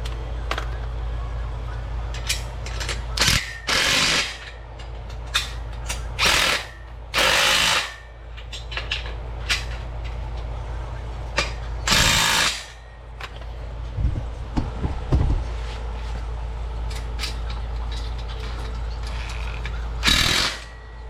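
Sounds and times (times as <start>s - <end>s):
tool tightening bolts: 2.2s - 9.8s, 11.4s - 12.8s, 16.9s - 20.8s.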